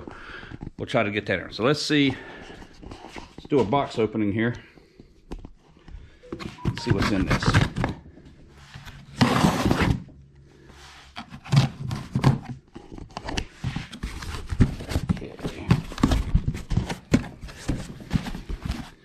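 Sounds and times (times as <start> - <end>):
knocks and scrapes of box flaps: 8.8 - 10.1, 11.1 - 19.0.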